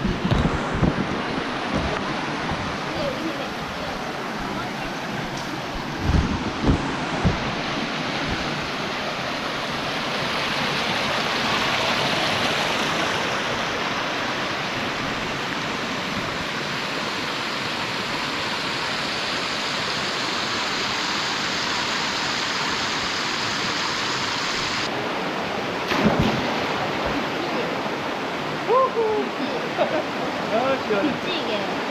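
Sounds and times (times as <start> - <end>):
stream rushing over rocks: 0.0 - 31.9.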